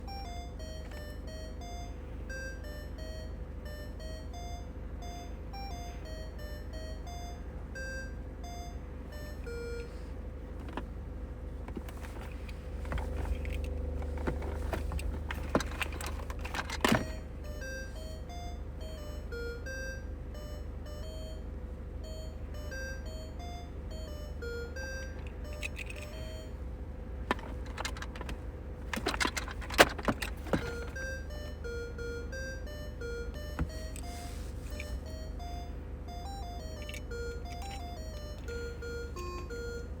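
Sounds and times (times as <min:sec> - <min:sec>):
clicking and rattling: 0:11.6 - 0:17.2, 0:25.2 - 0:26.3, 0:27.2 - 0:31.1
toy bird chirping beeps: 0:34.8 - 0:40.0.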